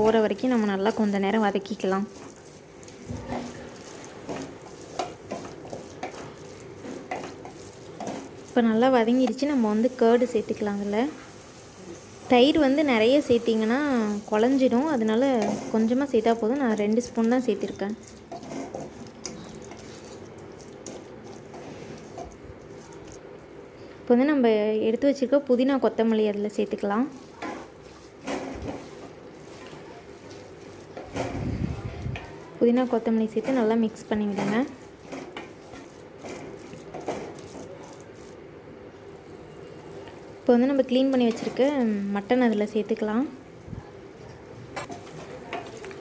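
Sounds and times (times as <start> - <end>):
spoon scraping pot: 0.0 - 9.9, 14.4 - 23.1, 32.2 - 38.3
low frying hiss: 0.0 - 24.0, 27.4 - 44.1.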